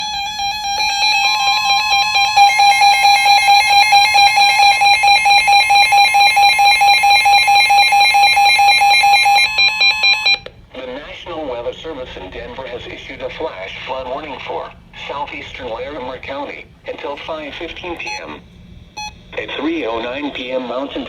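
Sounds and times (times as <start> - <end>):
two-tone alarm: 0.0 - 10.5, 19.0 - 19.3.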